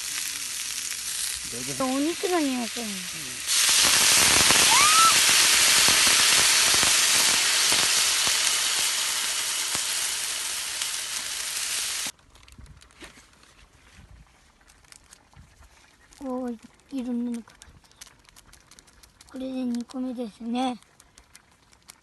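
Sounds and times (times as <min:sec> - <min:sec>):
meat sizzling in a pan: 0:00.0 - 0:12.2.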